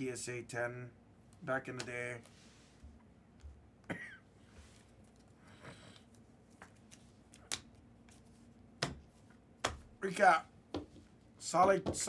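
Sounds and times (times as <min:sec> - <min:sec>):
cards tapping and clicking: 0:06.0 - 0:08.2, 0:08.8 - 0:09.9, 0:10.7 - 0:12.0.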